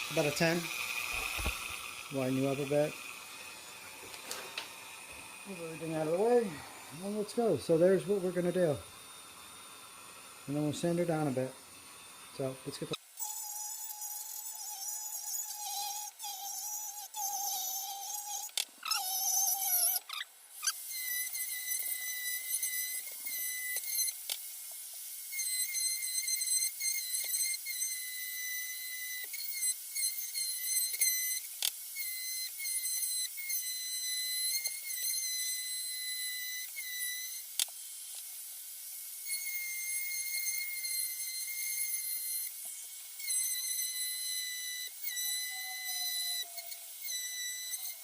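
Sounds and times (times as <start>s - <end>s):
rotary tool whining: 0.0s - 48.0s.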